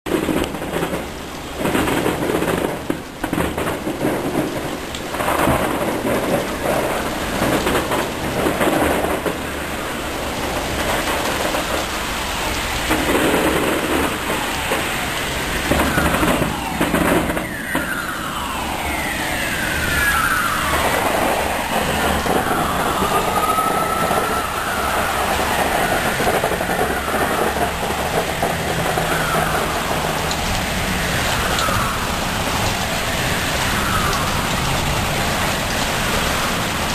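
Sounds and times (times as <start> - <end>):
deep thunder booms: 0.1 - 36.9
gusting wind: 0.1 - 36.9
rain: 0.1 - 36.9
whistling tones sliding in pitch: 15.3 - 35.3.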